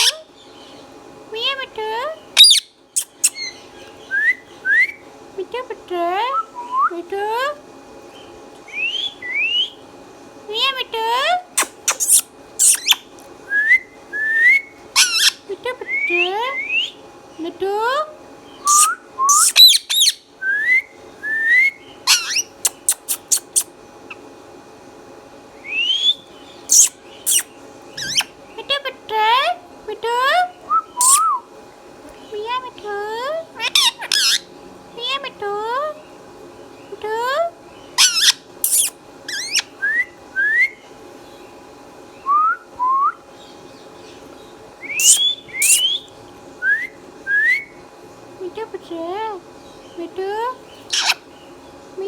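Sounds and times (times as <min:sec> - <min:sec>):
parakeet whistling: 0:00.0 - 0:00.2, 0:02.4 - 0:05.0, 0:08.7 - 0:09.8, 0:11.6 - 0:17.0, 0:18.6 - 0:23.7, 0:25.6 - 0:28.3, 0:30.7 - 0:31.4, 0:33.6 - 0:34.5, 0:38.0 - 0:40.8, 0:44.8 - 0:47.8, 0:50.9 - 0:51.2
parrot screech: 0:00.0 - 0:00.2, 0:02.4 - 0:03.6, 0:11.6 - 0:13.0, 0:15.0 - 0:15.4, 0:18.7 - 0:20.2, 0:22.1 - 0:23.7, 0:26.7 - 0:28.3, 0:31.0 - 0:31.3, 0:33.6 - 0:34.5, 0:38.0 - 0:39.7, 0:45.0 - 0:46.0, 0:50.9 - 0:51.2
parakeet squawking: 0:00.0 - 0:00.3, 0:02.4 - 0:03.7, 0:11.5 - 0:13.1, 0:15.0 - 0:15.5, 0:18.6 - 0:20.3, 0:22.0 - 0:24.2, 0:25.9 - 0:28.9, 0:31.0 - 0:31.3, 0:33.6 - 0:34.5, 0:38.0 - 0:39.8, 0:44.9 - 0:46.1, 0:50.7 - 0:51.3
parakeet chirping: 0:00.0 - 0:00.8, 0:02.4 - 0:04.1, 0:11.6 - 0:13.1, 0:15.0 - 0:15.5, 0:18.5 - 0:20.3, 0:22.0 - 0:24.2, 0:25.8 - 0:28.8, 0:31.0 - 0:31.3, 0:33.6 - 0:34.5, 0:37.9 - 0:39.8, 0:44.8 - 0:46.1, 0:50.7 - 0:51.4.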